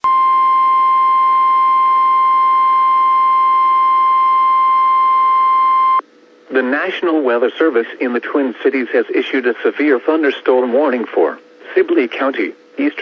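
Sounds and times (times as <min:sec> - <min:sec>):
steady alarm tone: 0:00.0 - 0:06.0
radio receiver hiss: 0:04.9 - 0:13.0.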